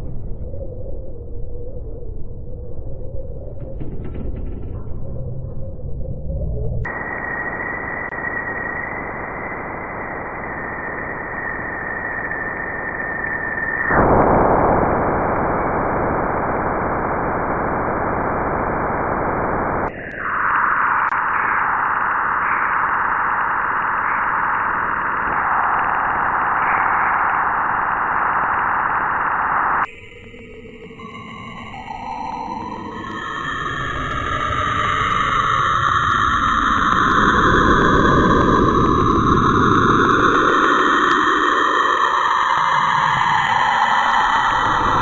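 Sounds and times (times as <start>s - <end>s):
steady high whistle: 6.8s - 16.6s, 19.9s - 45.0s
static-like hiss: 14.4s - 29.9s.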